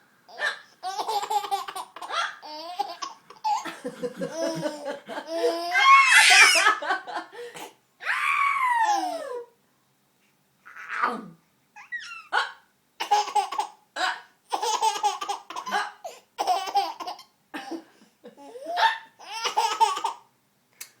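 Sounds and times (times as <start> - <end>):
baby laughing: 0.3 - 7.1, 13.0 - 13.8, 14.5 - 17.3, 18.4 - 20.3.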